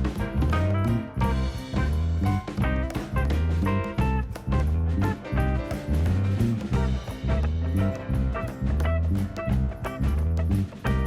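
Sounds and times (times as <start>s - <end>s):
upbeat swing music: 0.0s - 11.0s.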